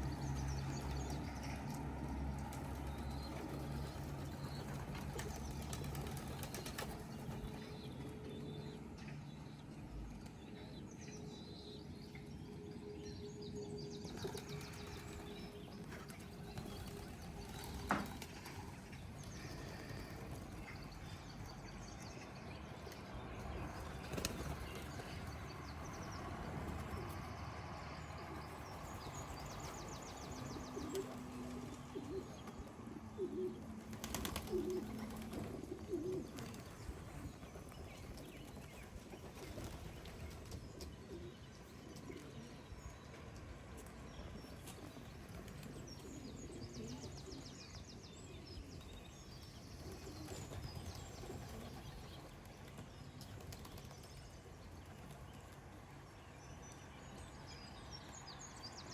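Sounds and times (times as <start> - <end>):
small birds chirping: 0.0 - 58.9
pigeon wings flapping: 2.5 - 7.7, 23.8 - 25.4, 33.8 - 40.9
pigeons cooing: 28.4 - 38.8.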